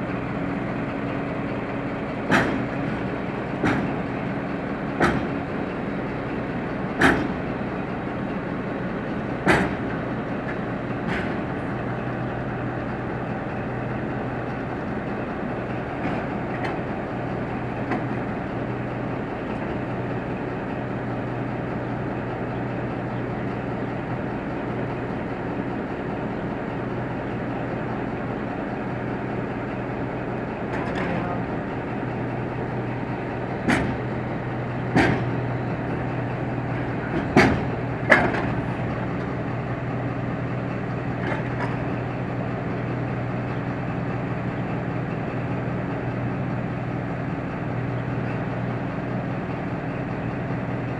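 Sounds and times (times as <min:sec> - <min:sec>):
locomotive engine idling: 0:00.0 - 0:50.9.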